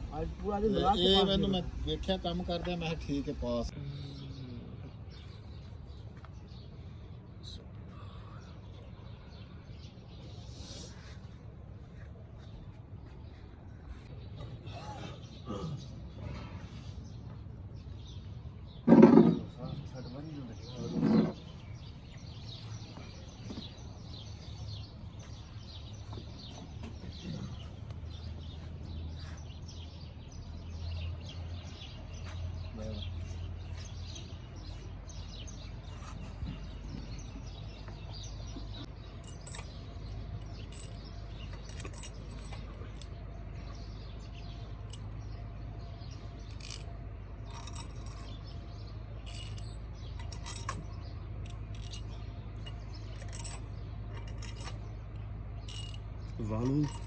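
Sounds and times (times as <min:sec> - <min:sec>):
metallic clinks of tools: 0:39.0 - 0:43.2, 0:46.4 - 0:57.0.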